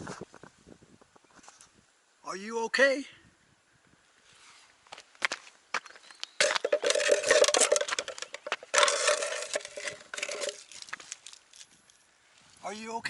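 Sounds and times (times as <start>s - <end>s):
metal boot studs scraping on rock: 4.3s - 12.0s.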